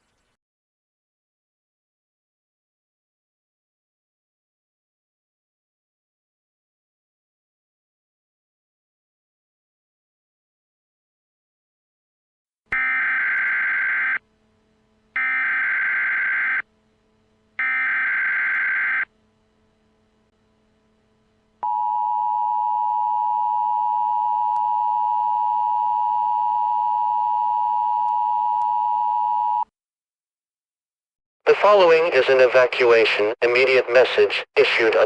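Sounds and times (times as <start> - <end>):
buzzy digital data bursts: 15.1 - 16.7, 17.6 - 19.2.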